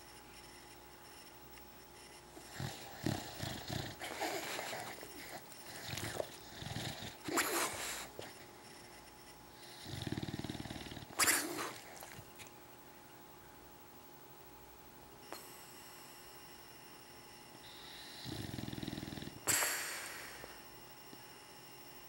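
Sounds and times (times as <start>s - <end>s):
dog rattling snore: 2.4s - 8.3s, 9.6s - 12.2s, 18.0s - 19.4s
dog snorting: 2.4s - 8.5s, 9.6s - 12.5s, 17.7s - 20.0s.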